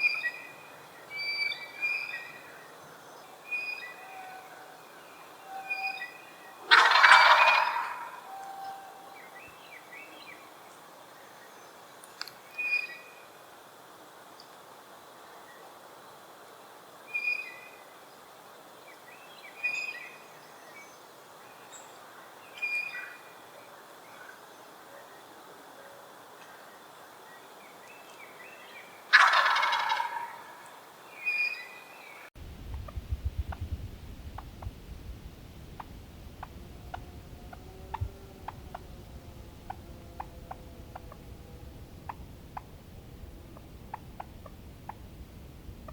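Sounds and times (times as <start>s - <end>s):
turkey gobbling: 6.6s - 9.0s, 29.1s - 30.6s, 35.8s - 41.4s, 43.5s - 45.0s.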